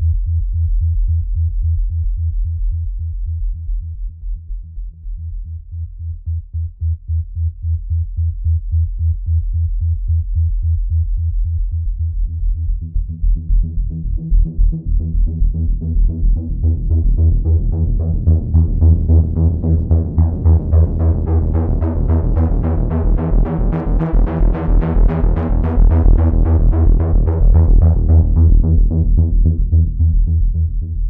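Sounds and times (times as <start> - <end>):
pulsing synth bass loop: 12.8 - 31.0.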